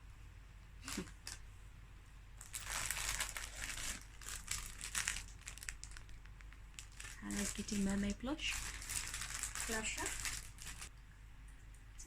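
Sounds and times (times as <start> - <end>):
packaging crinkling: 2.4 - 10.9.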